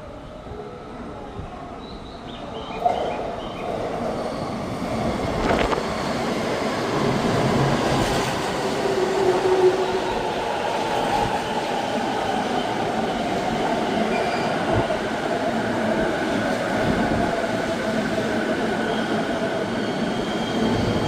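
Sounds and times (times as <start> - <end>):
electric train running on rails: 2.2 - 21.0.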